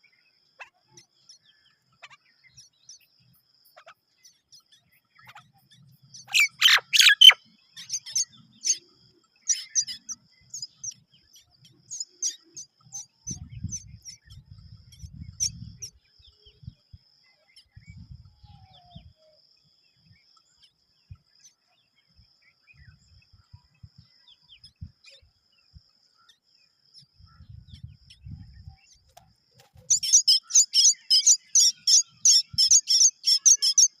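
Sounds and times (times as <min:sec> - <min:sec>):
mynas calling: 0:06.2 - 0:07.4
high bird chirps: 0:06.2 - 0:08.8, 0:29.7 - 0:34.0
chick begging calls: 0:06.3 - 0:07.4.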